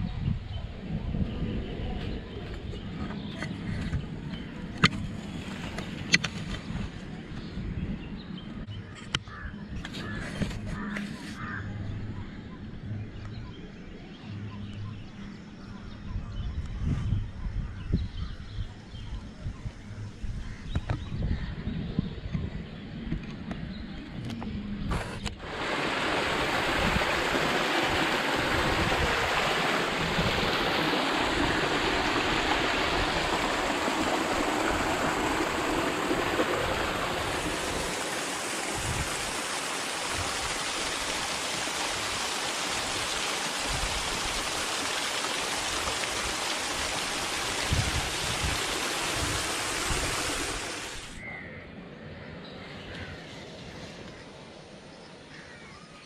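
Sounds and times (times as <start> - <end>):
water rushing: 25.4 - 51.2.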